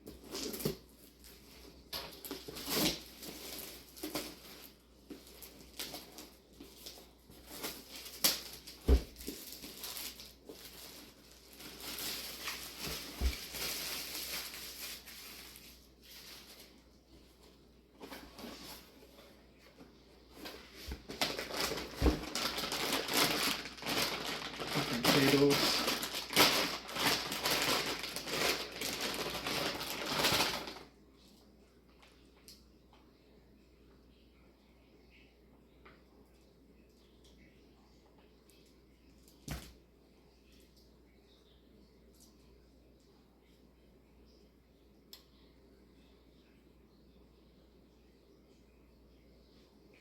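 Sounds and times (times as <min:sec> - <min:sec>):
packaging rustling and crinkling: 0:00.0 - 0:30.9.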